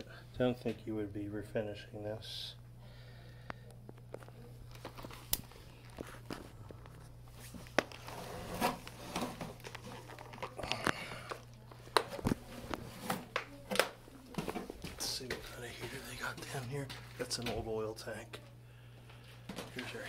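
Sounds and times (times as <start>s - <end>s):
steady low hum: 0.0s - 20.0s
footsteps: 14.3s - 17.8s.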